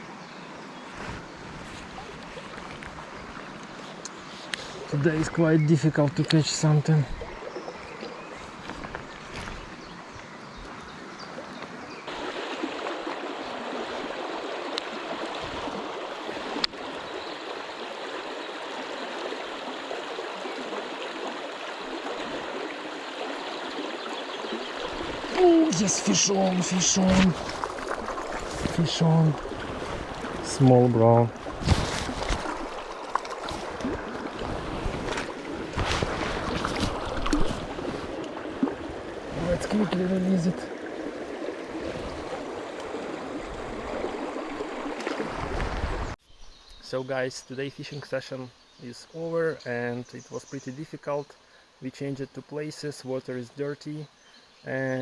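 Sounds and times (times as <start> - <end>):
river flowing over stones: 0.0 - 46.2
splashes and knocks: 18.7 - 46.2.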